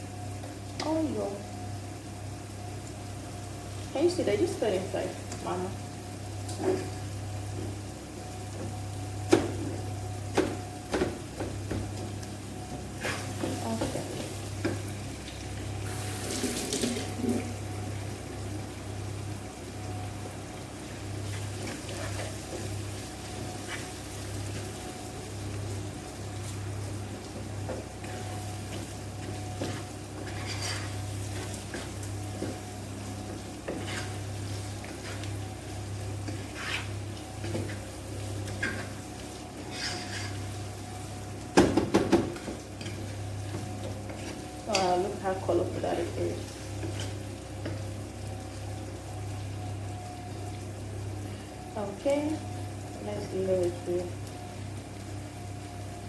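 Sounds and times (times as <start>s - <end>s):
rice sizzling in a pan: 0.0s - 56.0s
spoon scraping or tapping pan: 39.7s - 40.4s.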